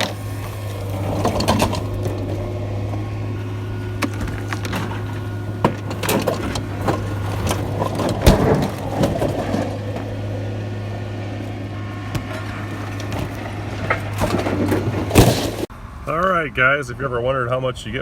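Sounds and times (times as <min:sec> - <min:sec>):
metallic knocks and clatter: 0:00.0 - 0:03.1, 0:03.8 - 0:10.3, 0:12.1 - 0:15.7
vehicle engine hum: 0:00.0 - 0:18.0.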